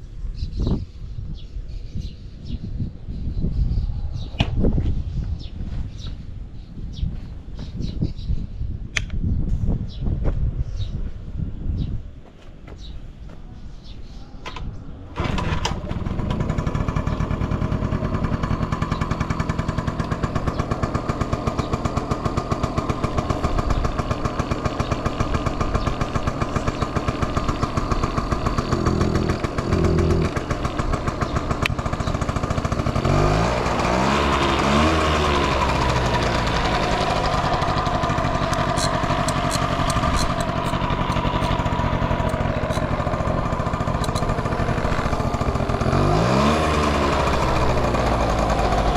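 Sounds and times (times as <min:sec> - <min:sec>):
two-stroke engine idling and revving: 0:15.2 - 0:48.9.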